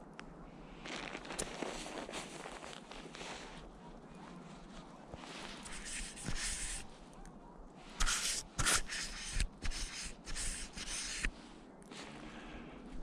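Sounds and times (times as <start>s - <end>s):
snowshoe steps crunching in snow: 0.8s - 6.1s.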